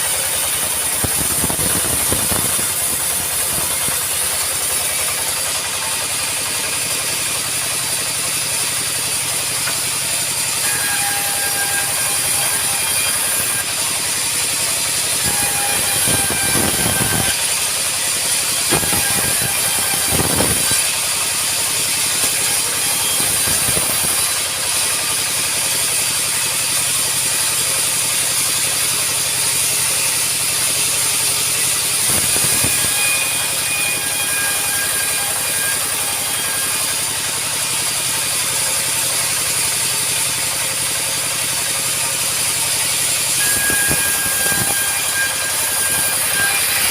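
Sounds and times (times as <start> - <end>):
sawmill machinery hissing: 0.0 - 46.9.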